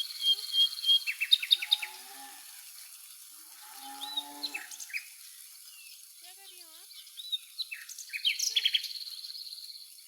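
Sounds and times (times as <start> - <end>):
small birds chirping: 0.0 - 2.0, 4.2 - 10.0.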